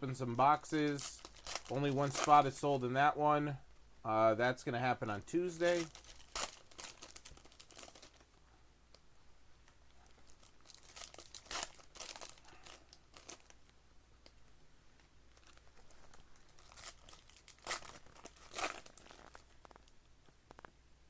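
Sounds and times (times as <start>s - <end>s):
wrappers crinkling and tearing: 0.3s - 2.8s, 5.1s - 8.4s, 10.0s - 13.7s, 15.3s - 20.7s.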